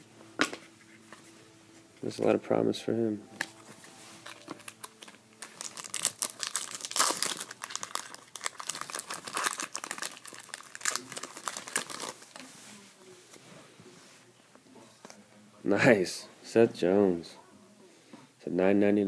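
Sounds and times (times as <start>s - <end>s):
foil wrapper tearing and crinkling: 4.2s - 12.4s.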